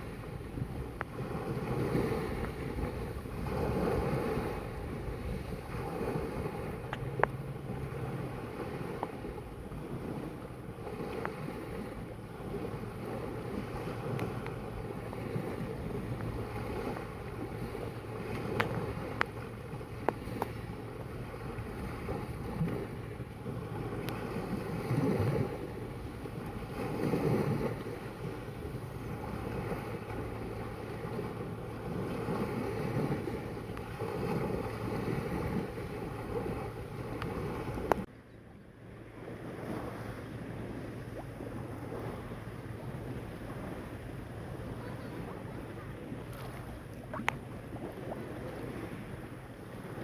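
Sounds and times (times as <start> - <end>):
sea waves washing in: 0.0 - 38.1, 38.7 - 50.0
wind buffeting microphone: 0.0 - 38.1.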